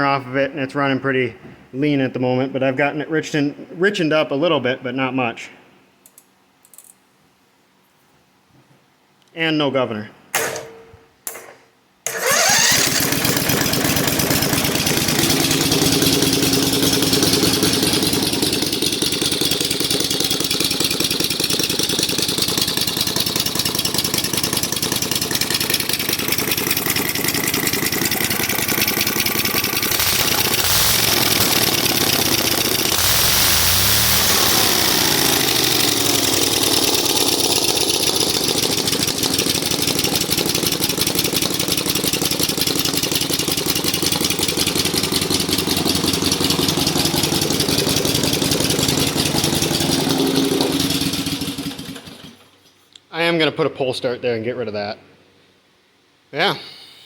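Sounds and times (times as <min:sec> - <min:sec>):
loud engine revving: 0:12.1 - 0:25.2, 0:29.6 - 0:40.3, 0:44.0 - 0:52.4.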